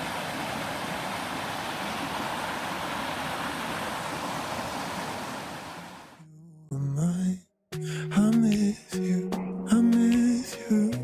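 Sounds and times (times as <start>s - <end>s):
river rapids rushing: 0.0s - 6.2s.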